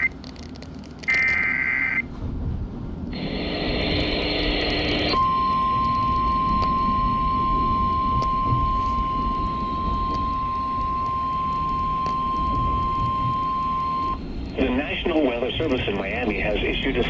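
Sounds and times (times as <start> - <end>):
background hiss and rumble: 0.0 - 17.0
steady warning tone: 3.1 - 17.0.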